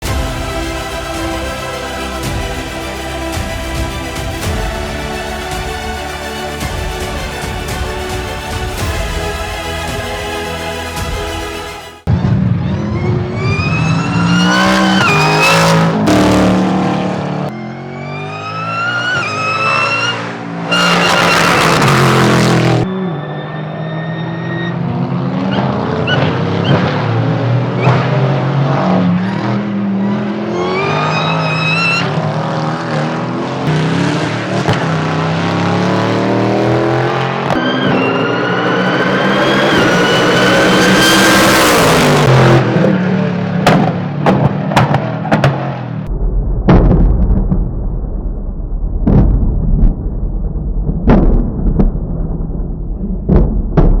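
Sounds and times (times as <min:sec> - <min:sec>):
car engine at full throttle: 0:12.2 - 0:46.2
high supercharger whine: 0:33.7 - 0:43.5
low engine rumble with thumps: 0:43.6 - 0:54.0.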